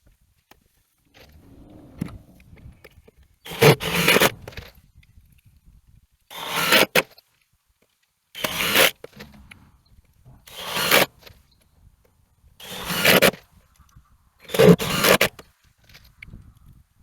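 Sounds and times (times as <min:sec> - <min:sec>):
hand saw cutting wood: 0:03.5 - 0:04.7, 0:06.3 - 0:07.1, 0:08.4 - 0:09.5, 0:10.4 - 0:11.4, 0:12.6 - 0:13.4, 0:14.5 - 0:15.4.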